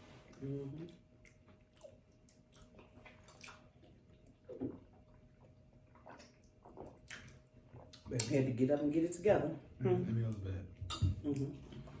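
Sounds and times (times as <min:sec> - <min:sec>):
faint steady hum: 0:00.0 - 0:12.0
chewing and mouth sounds: 0:00.2 - 0:08.3.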